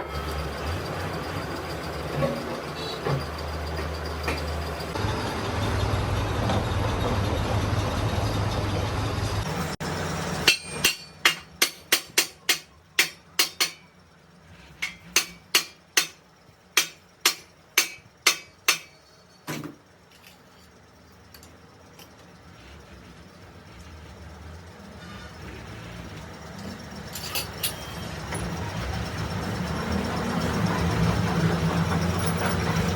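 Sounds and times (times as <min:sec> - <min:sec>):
rushing machine noise: 0:00.0 - 0:11.2, 0:22.6 - 0:32.9
hammer striking steel wheel rim: 0:10.4 - 0:14.0, 0:14.8 - 0:16.2, 0:16.8 - 0:19.1.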